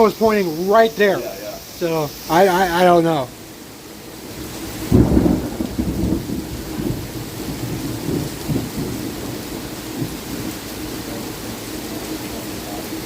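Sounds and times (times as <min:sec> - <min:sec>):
steady rain: 0:00.0 - 0:13.0
thunder rumbling: 0:04.1 - 0:13.0.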